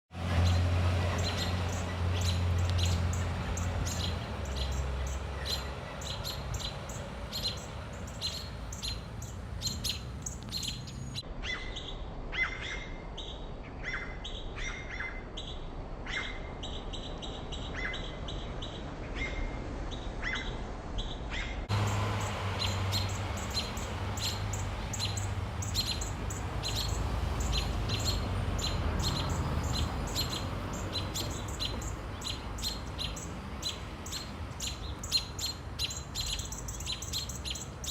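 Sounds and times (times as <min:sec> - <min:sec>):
small birds chirping: 0:00.3 - 0:37.9.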